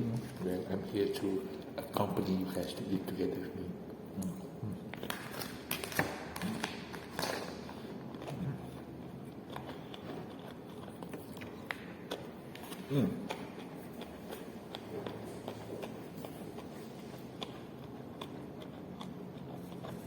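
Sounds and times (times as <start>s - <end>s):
chewing: 6.4s - 20.0s.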